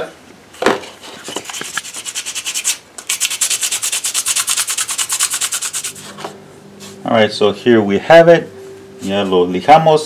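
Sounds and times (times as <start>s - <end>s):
sandpaper rubbing: 1.0s - 7.0s.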